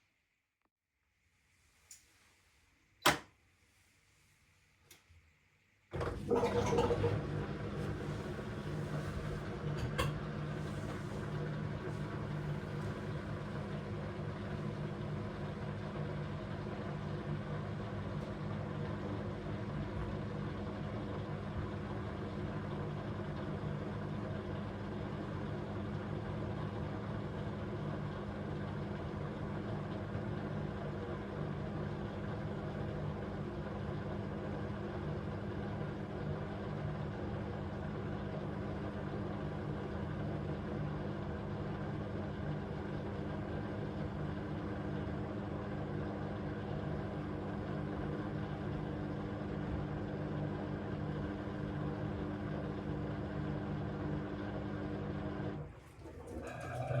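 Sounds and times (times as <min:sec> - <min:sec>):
washing machine motor hum: 0:04.9 - 0:57.0.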